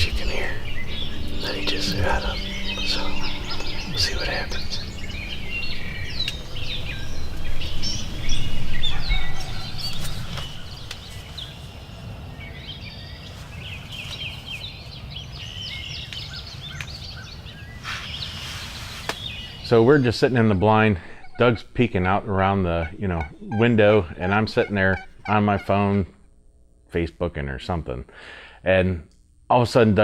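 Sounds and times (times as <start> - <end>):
low rumble of wind: 0.0 - 17.7
songbird chirps and calls: 0.0 - 26.0.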